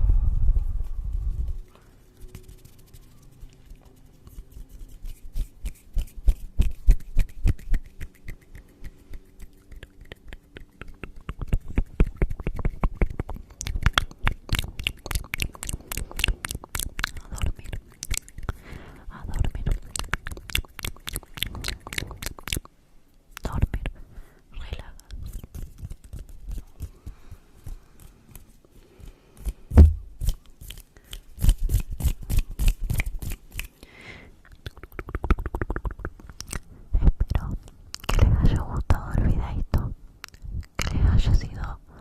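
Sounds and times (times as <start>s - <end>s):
low rumble on microphone: 0.0s - 1.7s.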